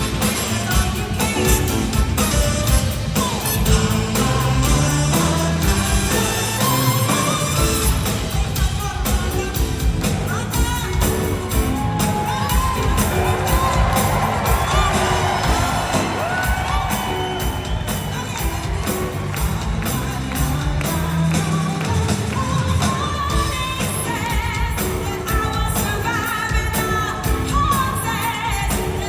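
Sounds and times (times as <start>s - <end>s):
live band music: 0.0s - 29.0s
audience cheering and whooping: 11.0s - 23.3s.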